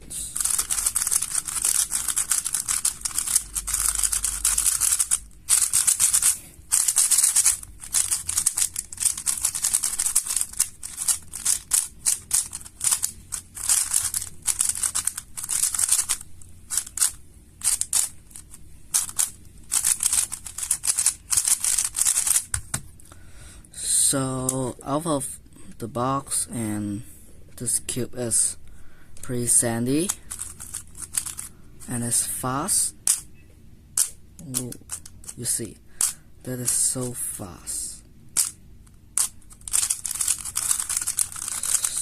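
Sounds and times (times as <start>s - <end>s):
puzzle cube clicking and rattling: 0.3s - 22.9s, 30.0s - 32.0s, 33.0s - 33.3s, 34.0s - 37.0s, 38.3s - 42.0s.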